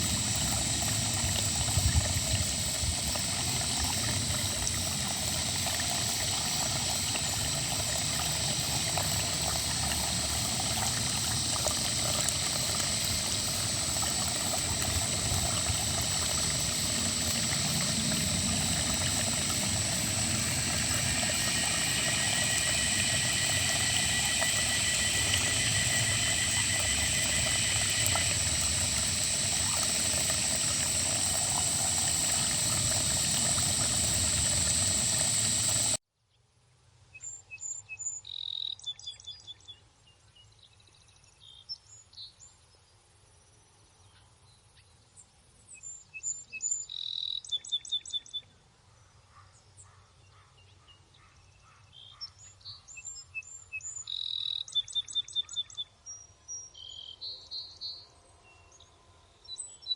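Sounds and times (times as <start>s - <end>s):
dense rasping drone: 8.6s - 36.0s.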